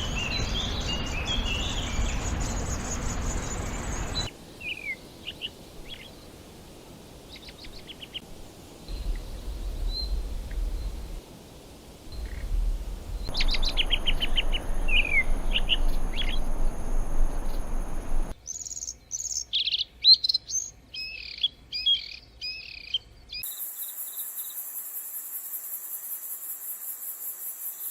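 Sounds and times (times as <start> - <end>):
bird chattering and chirping: 12.2 - 19.7
songbird trilling and whistling: 13.2 - 24.2
high-pitched insect buzz: 23.5 - 27.9.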